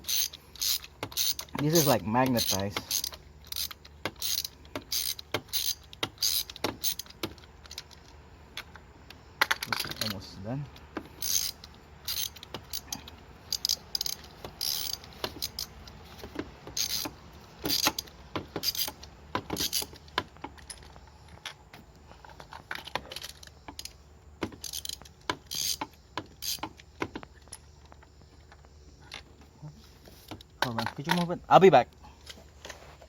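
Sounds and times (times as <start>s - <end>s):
ratchet clicking and clinking: 0.0s - 8.8s, 9.4s - 10.3s, 11.1s - 16.0s, 16.7s - 21.6s, 22.5s - 27.7s.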